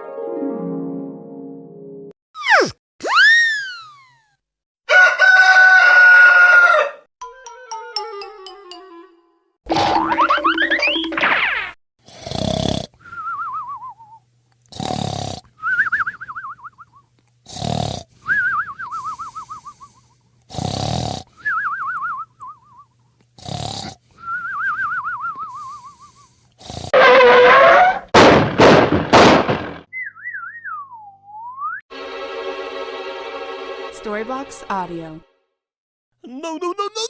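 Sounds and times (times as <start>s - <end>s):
warbling descending whistle: 2.4s - 4.2s, 29.9s - 31.8s.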